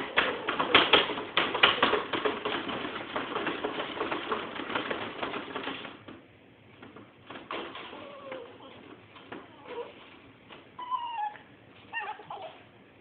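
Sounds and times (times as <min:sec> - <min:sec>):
dog whimpering and yipping: 0:07.8 - 0:10.1, 0:10.8 - 0:12.8.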